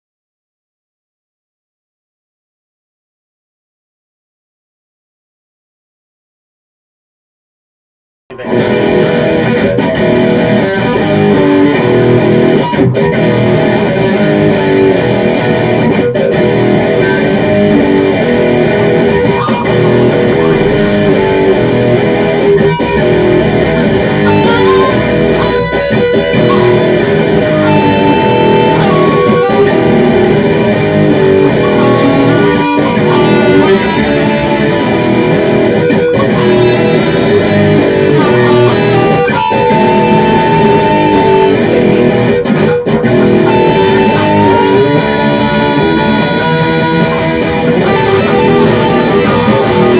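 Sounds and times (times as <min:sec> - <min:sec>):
bending lead guitar notes: 0:08.3 - 0:49.9
hard rock with electric guitar: 0:08.3 - 0:49.9.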